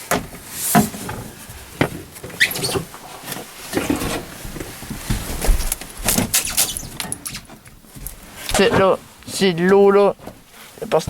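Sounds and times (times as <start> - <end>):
hand handling material: 0.0 - 11.0
short squeak: 6.3 - 7.5.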